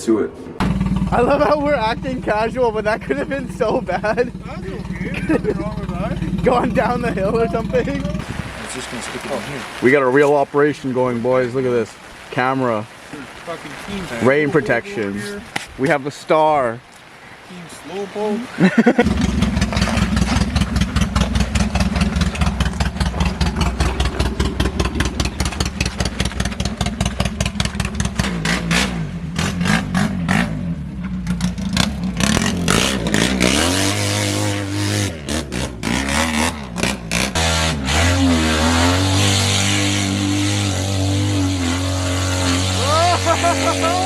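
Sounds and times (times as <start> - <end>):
small engine revving: 19.0 - 44.0.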